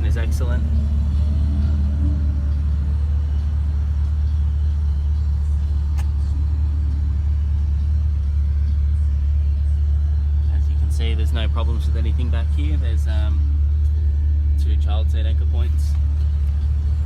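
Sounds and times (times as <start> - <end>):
car engine idling: 0.0 - 17.0
sharp click: 5.9 - 6.4.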